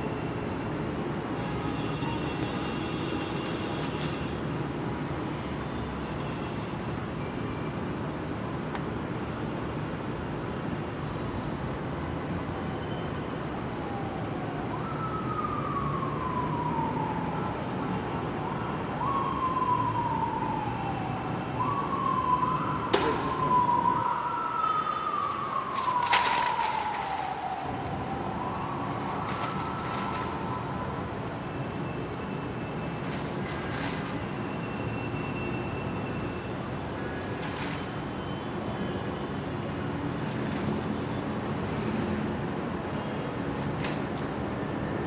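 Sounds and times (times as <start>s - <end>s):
siren wailing: 13.9s - 32.9s.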